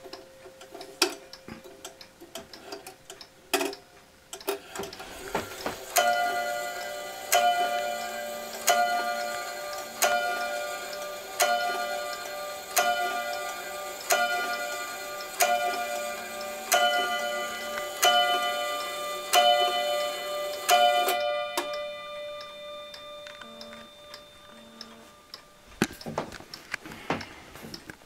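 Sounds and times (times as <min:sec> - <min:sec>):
faint clock ticking: 0:00.0 - 0:28.0
clock bell striking: 0:05.4 - 0:25.6.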